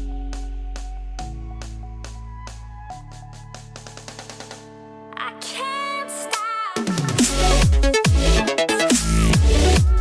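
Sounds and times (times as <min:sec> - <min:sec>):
electronic music drum build-up: 0:06.8 - 0:10.0.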